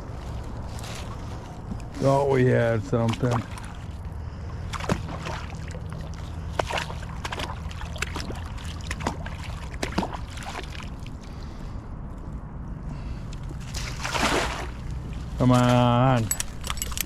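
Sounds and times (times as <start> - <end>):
steady low rumble: 0.0 - 17.0
water sloshing and trickling: 0.1 - 11.9, 13.3 - 17.0
small clicks and knocks: 16.2 - 17.0.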